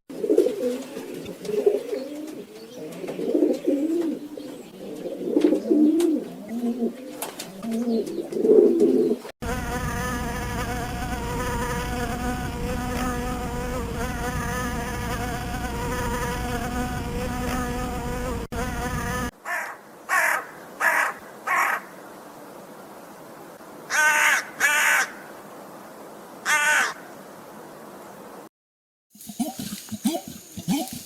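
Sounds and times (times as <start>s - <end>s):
flying insect buzzing: 9.4s - 19.4s, 29.2s - 31.0s
crow cawing: 19.4s - 22.0s, 23.9s - 25.3s, 26.4s - 27.1s.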